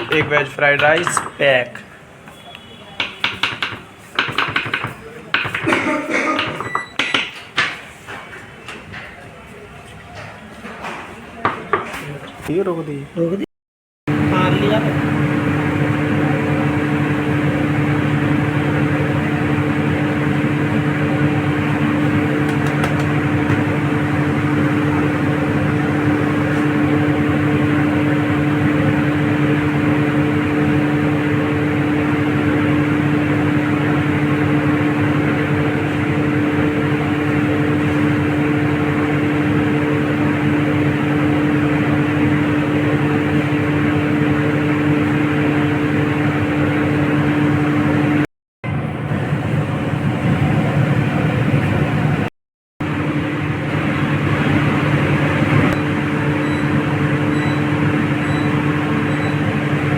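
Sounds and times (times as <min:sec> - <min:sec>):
fan motor hum: 0:14.1 - 0:59.9.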